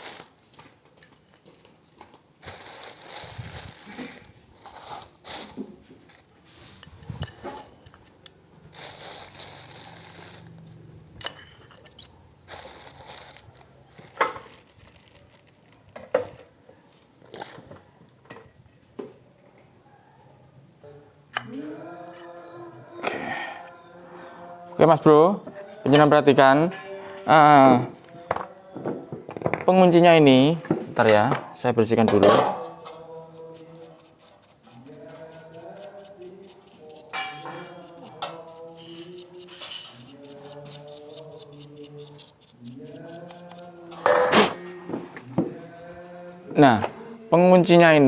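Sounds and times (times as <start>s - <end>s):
metal clinks of tools: 11.1s - 14.6s.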